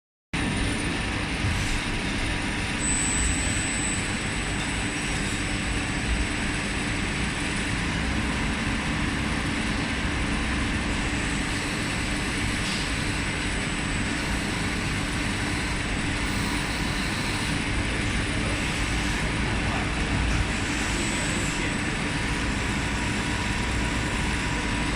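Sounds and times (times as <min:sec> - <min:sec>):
thin high whine: 0:01.4 - 0:06.2
lathe running: 0:05.7 - 0:19.8.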